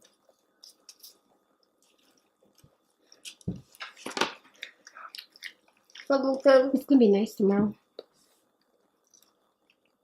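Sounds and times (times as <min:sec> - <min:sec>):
chewing with wet mouth clicks: 0:04.5 - 0:06.1.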